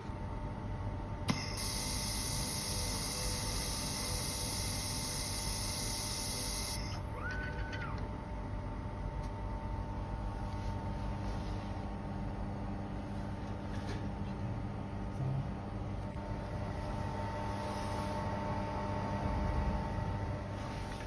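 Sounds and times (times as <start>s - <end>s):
welding machine humming: 1.3s - 7.3s.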